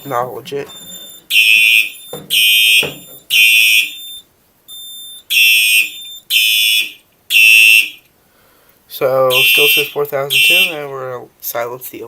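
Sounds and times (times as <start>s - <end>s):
faint steady beep: 0.6s - 6.3s
fire alarm horn blasts: 0.8s - 8.1s, 9.3s - 10.9s.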